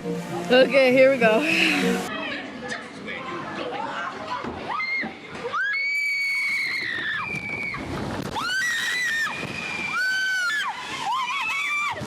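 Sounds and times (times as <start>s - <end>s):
riders screaming: 8.4s - 12.0s.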